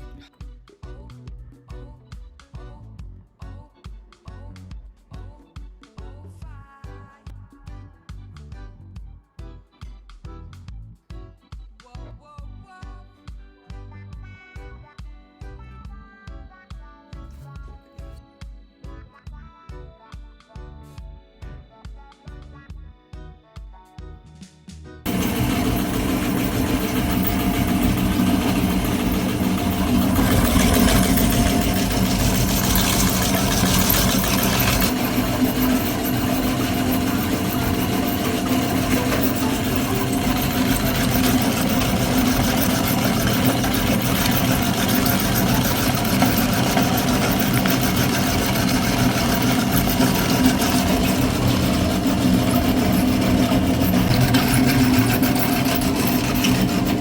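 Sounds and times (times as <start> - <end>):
meat grinder motor humming: 25.1 - 57.0
rough grinding noise: 25.1 - 57.0.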